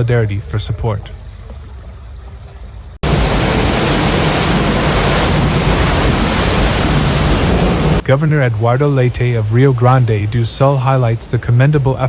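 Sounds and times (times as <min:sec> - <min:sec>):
loud steady rushing noise: 0:03.0 - 0:12.0
faint hiss: 0:06.8 - 0:12.0.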